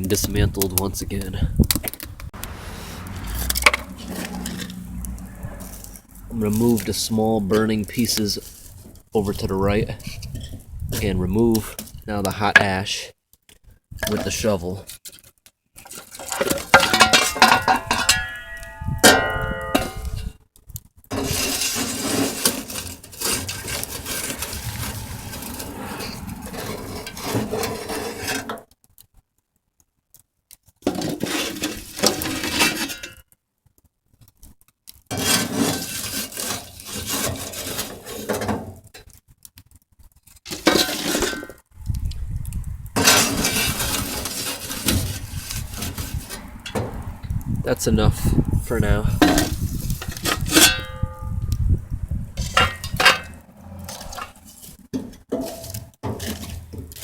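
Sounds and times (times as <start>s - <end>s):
shovel scraping ash: 2.0s - 9.0s, 14.1s - 20.3s, 21.1s - 28.7s, 30.8s - 33.2s, 35.1s - 39.2s, 40.2s - 41.6s, 43.0s - 47.0s, 48.8s - 51.4s, 52.4s - 57.0s
metal shovel clinking: 15.9s - 20.3s, 21.1s - 25.6s, 40.5s - 41.6s, 43.0s - 46.8s, 49.2s - 51.4s, 52.4s - 57.0s.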